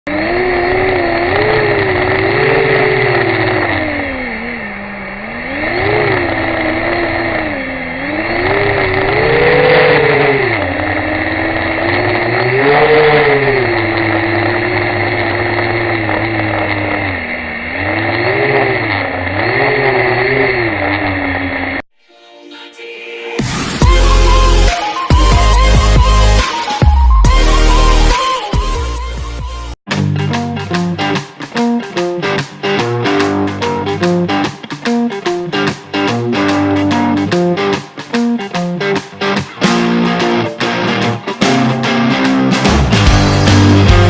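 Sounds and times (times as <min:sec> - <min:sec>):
quadcopter motors whining: 0:00.1 - 0:21.8.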